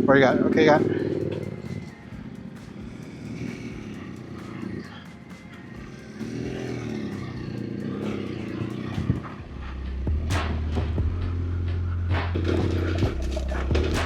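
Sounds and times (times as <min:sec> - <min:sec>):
motorcycle engine revving: 0:00.0 - 0:14.0.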